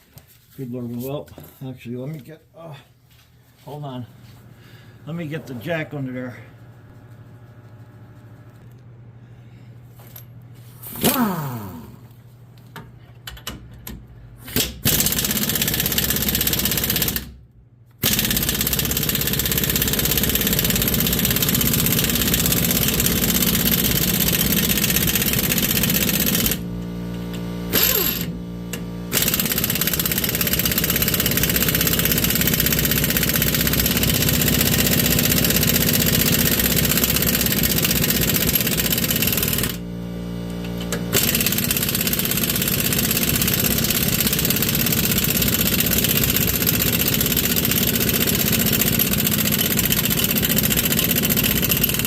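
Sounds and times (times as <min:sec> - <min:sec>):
pneumatic impact wrench hammering: 0:10.8 - 0:11.9, 0:14.4 - 0:17.3, 0:18.0 - 0:39.8, 0:40.6 - 0:52.0.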